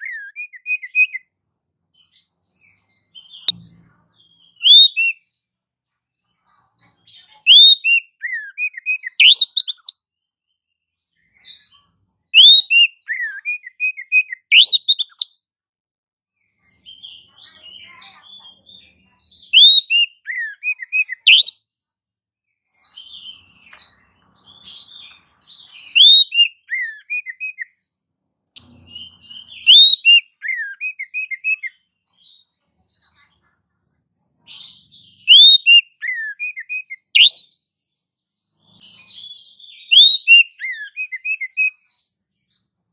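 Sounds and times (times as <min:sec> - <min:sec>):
songbird chirping: 0:00.0 - 0:01.3, 0:01.9 - 0:15.5, 0:16.4 - 0:42.7.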